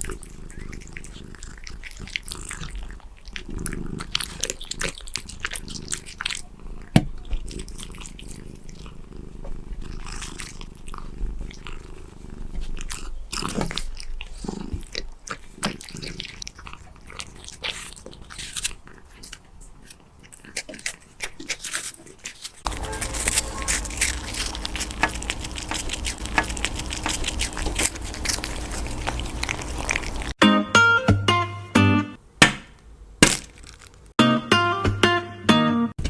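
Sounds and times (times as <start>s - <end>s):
cat purring: 0.0s - 20.8s, 22.7s - 30.4s
cat crunchy chewing: 0.0s - 30.4s.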